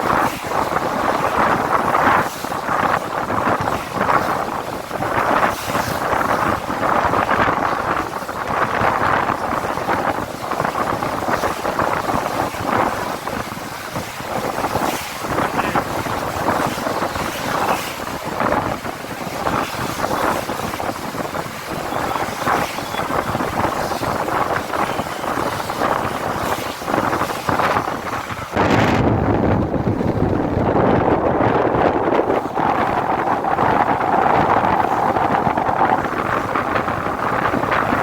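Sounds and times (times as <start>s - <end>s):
wind buffeting microphone: 0.0s - 38.0s
road traffic: 15.0s - 38.0s.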